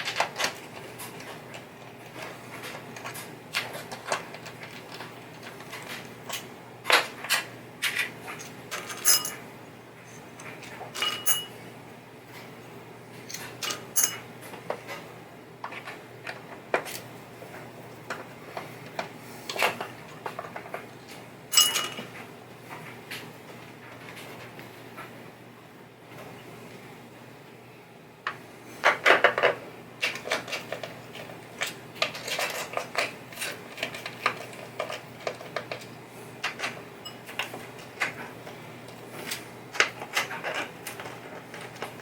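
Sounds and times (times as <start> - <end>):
small metal parts clattering: 7.8 - 9.4, 10.0 - 11.5, 13.3 - 14.2, 21.5 - 22.1
hand tools clinking: 8.4 - 9.4, 10.0 - 11.6, 13.6 - 14.2, 21.5 - 22.1.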